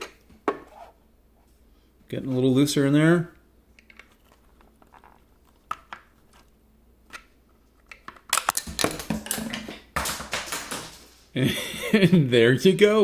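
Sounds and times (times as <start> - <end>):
plastic lid parts clicking and creaking: 3.8 - 6.5, 7.1 - 9.8
plastic pieces clattering and rattling: 8.0 - 11.4.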